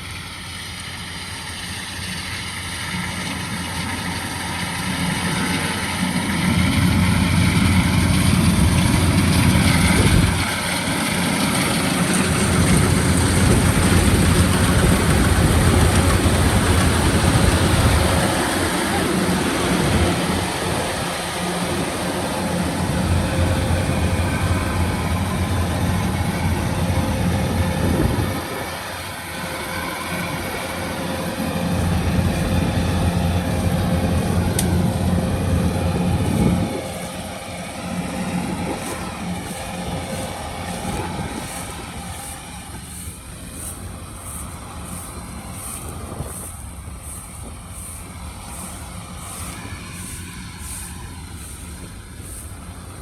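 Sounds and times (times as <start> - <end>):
combine harvester engine running: 0.0 - 53.0.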